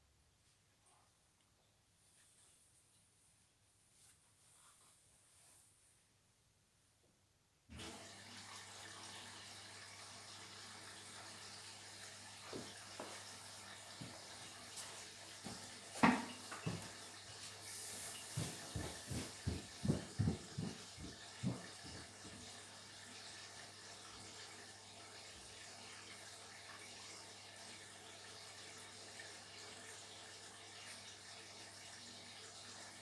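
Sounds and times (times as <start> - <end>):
water hissing into washing machine: 7.7 - 33.0
knocks and thuds: 18.4 - 22.4.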